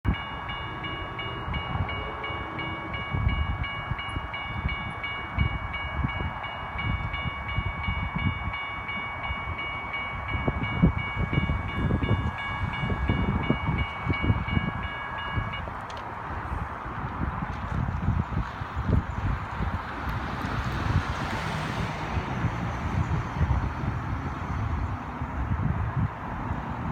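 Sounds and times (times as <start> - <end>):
wind buffeting microphone: 0.0 - 26.9
locomotive air horn: 0.6 - 3.5.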